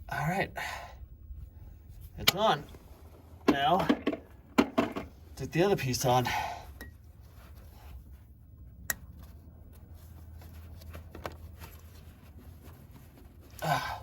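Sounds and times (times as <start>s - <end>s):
steady low hum: 0.0s - 14.0s
clicks and rustles of parts: 8.8s - 13.6s.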